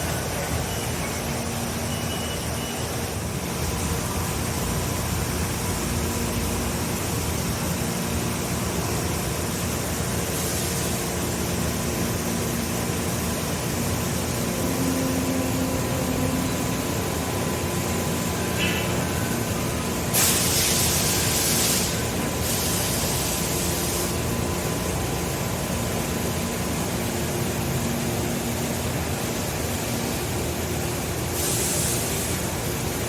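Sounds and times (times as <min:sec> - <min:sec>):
faint hum: 0:13.6 - 0:20.0.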